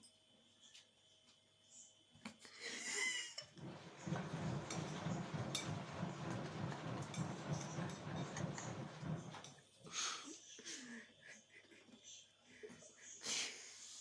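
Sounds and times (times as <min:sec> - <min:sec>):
clatter of items: 0:03.6 - 0:09.6.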